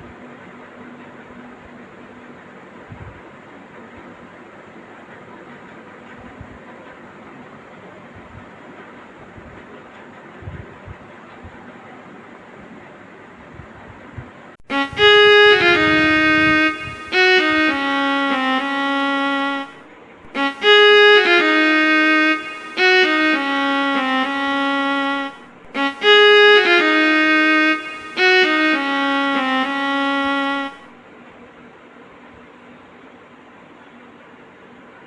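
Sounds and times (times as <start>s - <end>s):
melody of sliding notes: 14.6s - 31.0s.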